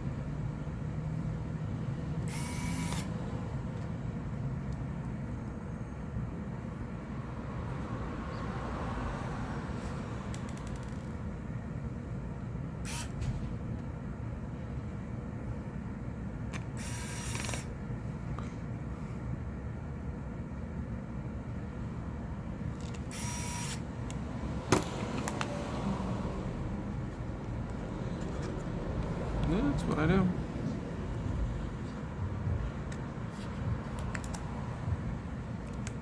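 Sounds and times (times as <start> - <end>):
steady low hum: 0.0 - 36.0
phone parts scraping and clicking: 10.3 - 11.2, 16.5 - 17.7, 22.7 - 24.2.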